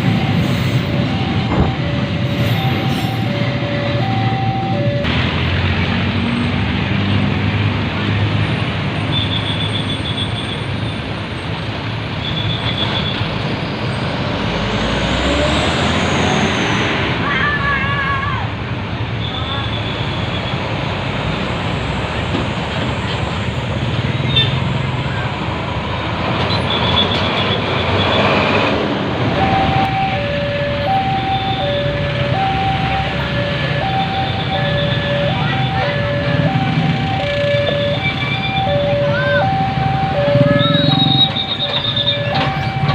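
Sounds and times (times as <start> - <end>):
two-tone electronic signal: 0.0 - 5.1, 29.4 - 42.9
heavy traffic rumble: 0.0 - 42.9
passing vehicle: 0.0 - 42.9.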